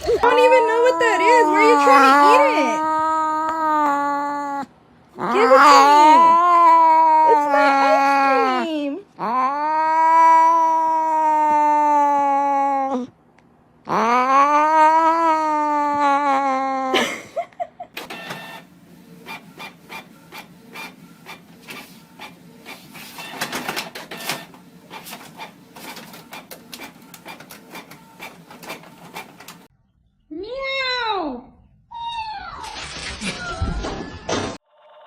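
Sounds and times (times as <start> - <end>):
cat yowling: 0.2 - 13.1, 13.9 - 17.0
cat meowing: 0.3 - 8.6, 9.2 - 13.1.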